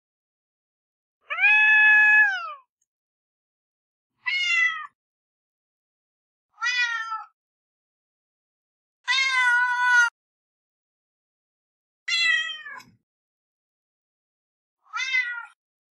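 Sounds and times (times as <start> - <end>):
cat meowing: 1.2 - 2.7, 4.2 - 5.0, 6.5 - 7.4, 9.0 - 10.2, 12.1 - 12.9, 14.8 - 15.6.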